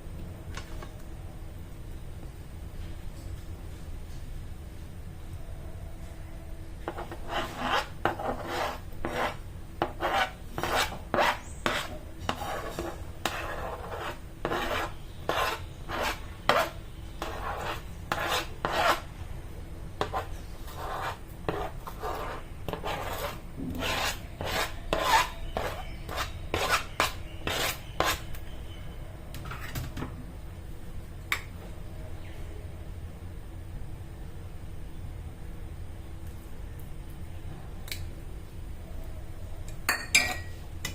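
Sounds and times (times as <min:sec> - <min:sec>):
utensil scraping food in bowl: 0:06.9 - 0:19.1, 0:20.0 - 0:28.3.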